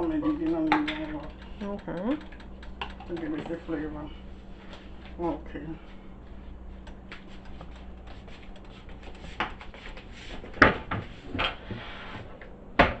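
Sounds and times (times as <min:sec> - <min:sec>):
low background hum: 0:00.0 - 0:13.0
kitchen knocks and clunks: 0:10.4 - 0:11.6, 0:12.8 - 0:13.0.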